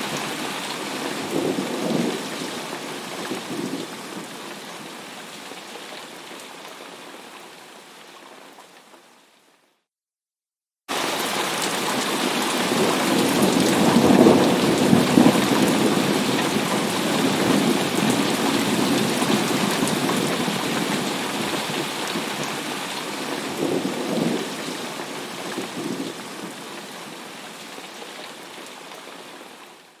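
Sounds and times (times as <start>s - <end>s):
heavy rain: 0.0s - 9.5s, 10.9s - 30.0s.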